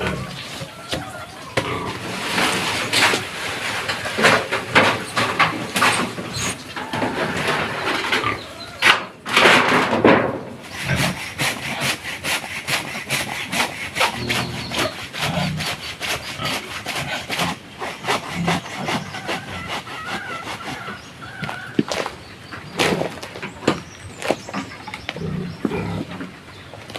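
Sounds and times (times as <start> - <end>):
hand tool rasping on wood: 10.6 - 21.1.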